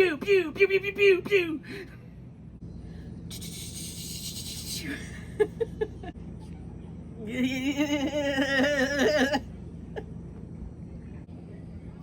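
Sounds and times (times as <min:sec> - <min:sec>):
person making mouth clicks: 0:03.3 - 0:04.8.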